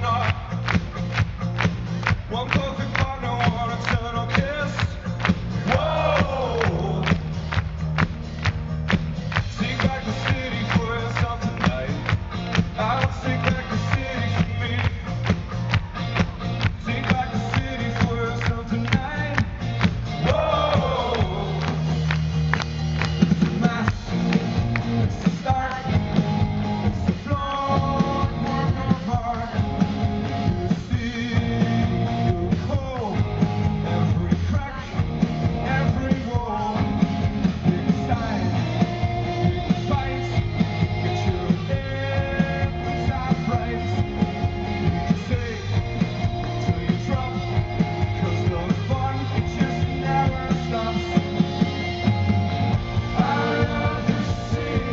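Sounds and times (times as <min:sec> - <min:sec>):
rock band playing live: 0:00.0 - 0:54.9
steady drum beat: 0:00.0 - 0:54.9
singing over band: 0:05.6 - 0:07.3, 0:09.4 - 0:15.1, 0:16.7 - 0:21.9, 0:25.0 - 0:29.8, 0:30.6 - 0:54.9.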